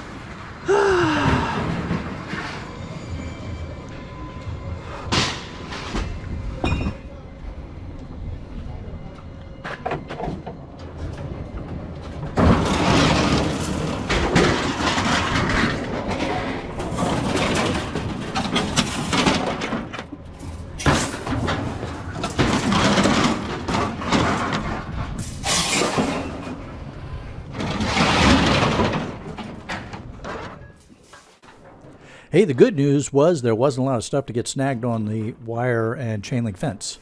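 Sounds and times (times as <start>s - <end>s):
scrap metal clattering and crashing: 12.1s - 32.0s.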